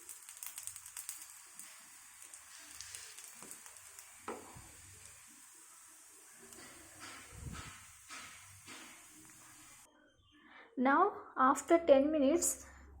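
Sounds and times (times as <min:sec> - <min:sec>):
oil sizzling and crackling: 0:00.0 - 0:09.9
knock: 0:07.0 - 0:09.0.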